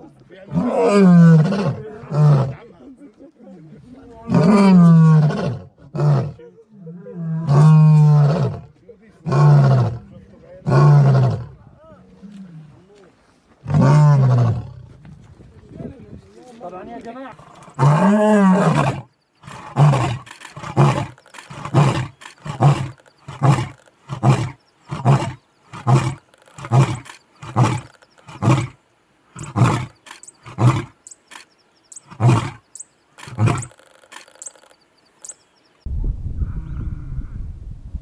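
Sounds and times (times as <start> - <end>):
lion roaring: 0.5 - 2.6, 4.2 - 13.0, 13.6 - 14.9, 17.4 - 28.8
lion grunting: 0.5 - 2.8, 3.6 - 15.0, 17.3 - 28.8, 33.2 - 34.4.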